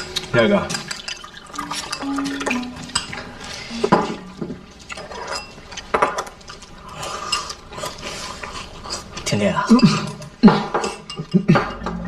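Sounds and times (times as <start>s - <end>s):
utensils clinking against dishes: 3.8s - 12.0s.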